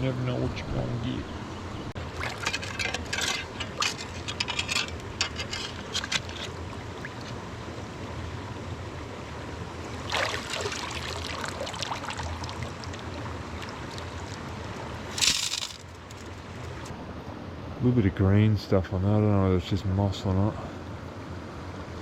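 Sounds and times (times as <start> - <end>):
river running: 0.0 - 17.0
water sloshing: 1.3 - 7.4, 10.0 - 16.9
stones rattling in a pan: 2.3 - 6.5, 15.1 - 16.8.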